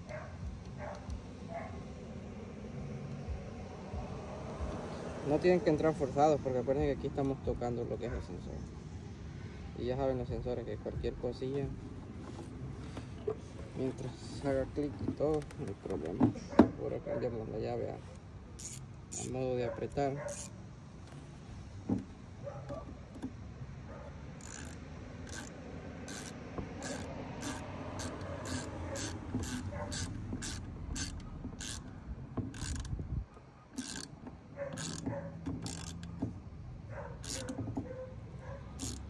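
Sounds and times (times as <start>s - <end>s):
ratchet wrench clicking: 18.6s - 19.4s, 20.3s - 20.6s, 24.4s - 33.0s, 33.8s - 34.2s, 34.8s - 36.2s, 37.2s - 37.7s, 38.8s - 39.0s.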